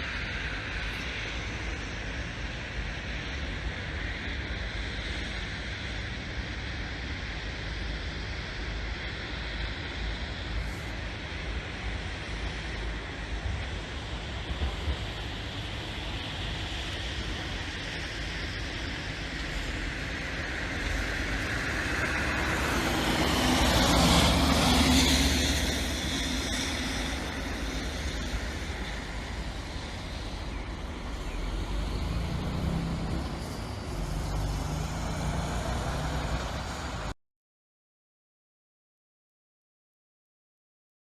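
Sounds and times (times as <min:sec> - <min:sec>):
heavy vehicle passing: 0:21.6 - 0:27.6, 0:31.1 - 0:37.2.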